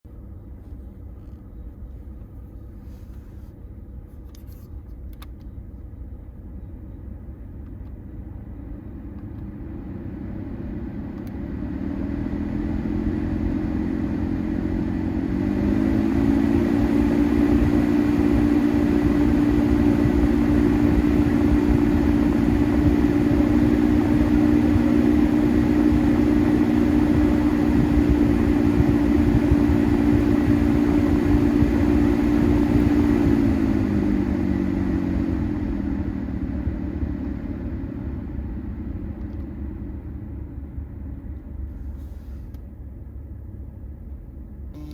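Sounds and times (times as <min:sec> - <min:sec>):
low droning hum: 0:00.1 - 0:35.2, 0:38.0 - 0:44.9
blower fan air rush: 0:11.5 - 0:35.5.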